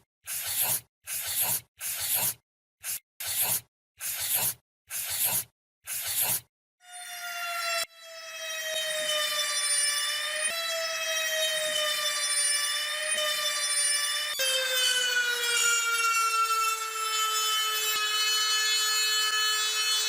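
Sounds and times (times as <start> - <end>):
electric power tool whining: 6.9 - 20.0.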